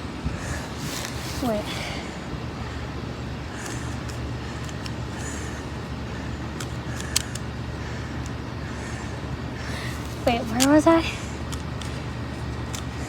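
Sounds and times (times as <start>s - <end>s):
low background hum: 0.0s - 13.0s
plastic puzzle cube clicking: 3.6s - 5.6s, 6.5s - 7.5s, 9.9s - 13.0s.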